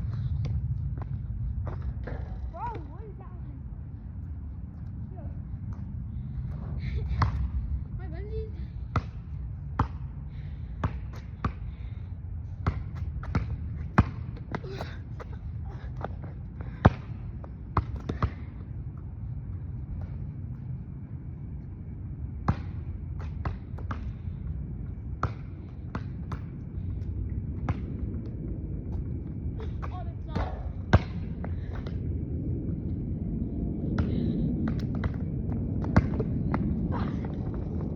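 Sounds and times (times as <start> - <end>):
basketball bouncing on hard court: 8.9 - 10.1, 12.6 - 14.9, 16.0 - 18.6, 22.4 - 24.2, 25.2 - 26.5, 27.6 - 27.9, 29.6 - 31.2, 34.7 - 37.2.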